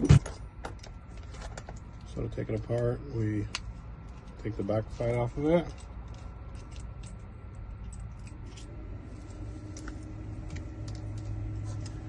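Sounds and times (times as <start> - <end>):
steady low hum: 0.0 - 12.0
low steady tone: 0.7 - 12.0
metal lock parts clicking: 5.2 - 8.8.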